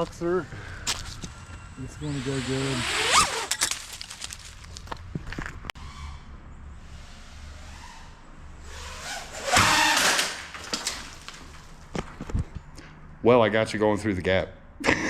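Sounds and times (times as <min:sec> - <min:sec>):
racing drone flying past: 0:01.3 - 0:03.5.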